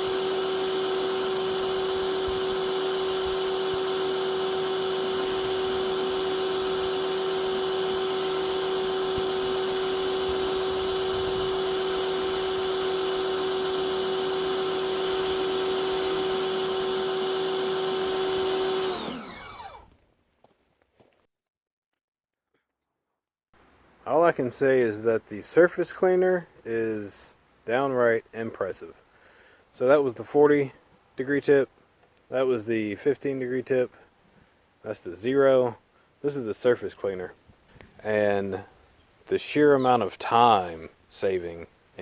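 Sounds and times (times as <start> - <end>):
pressure washer motor whine: 0.0 - 19.9.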